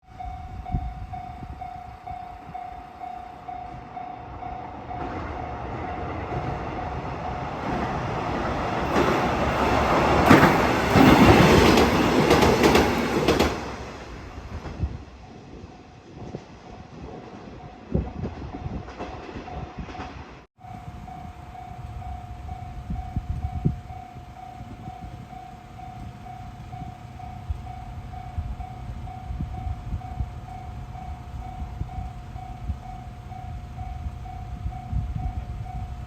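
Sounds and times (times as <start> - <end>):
train passing: 0.0 - 36.0
wheels clacking over rail joints: 4.9 - 14.8.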